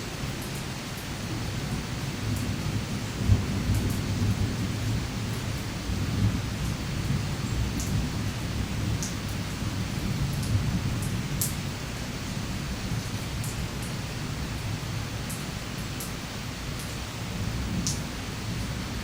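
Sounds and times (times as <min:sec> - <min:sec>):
steady rain: 0:00.0 - 0:19.0
rolling thunder rumble: 0:02.3 - 0:11.4.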